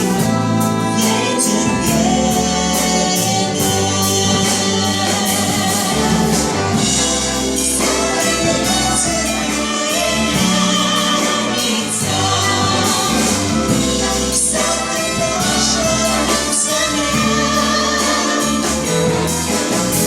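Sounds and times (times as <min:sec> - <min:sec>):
jazz orchestra playing pop song: 0:00.0 - 0:20.0
people singing: 0:00.0 - 0:20.0.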